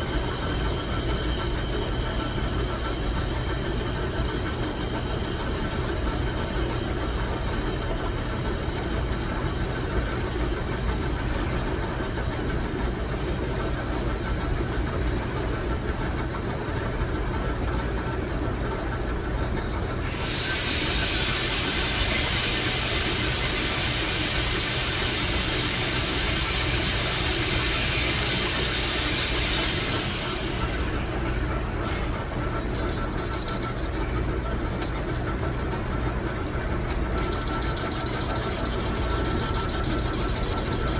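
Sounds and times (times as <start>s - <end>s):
metal lathe humming: 19.9s - 35.5s
loud hiss: 20.0s - 33.2s.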